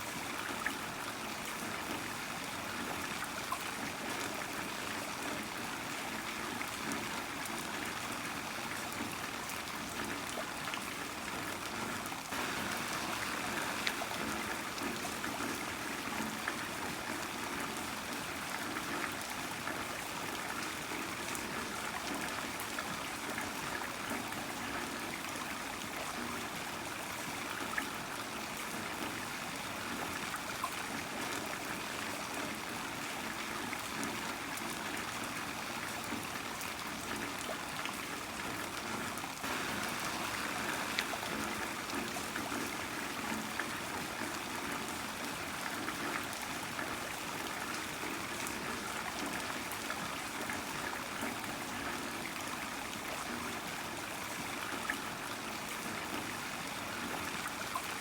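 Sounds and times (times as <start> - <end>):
water trickling: 9.9 - 23.5, 36.0 - 51.6
heavy rain: 12.3 - 17.3, 39.4 - 45.2.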